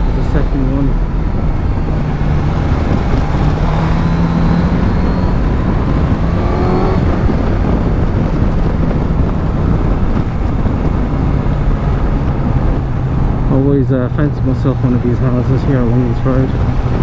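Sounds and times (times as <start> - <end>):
motorcycle engine running: 0.0 - 13.4
road noise: 0.0 - 17.0
wind noise: 0.0 - 17.0.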